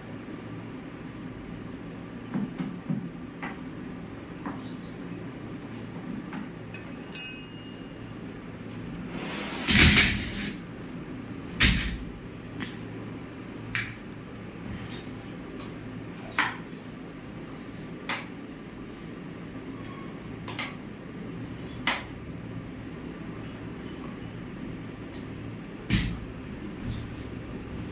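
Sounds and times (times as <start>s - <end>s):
steady low hum: 0.0s - 27.9s
high clink: 6.7s - 7.9s.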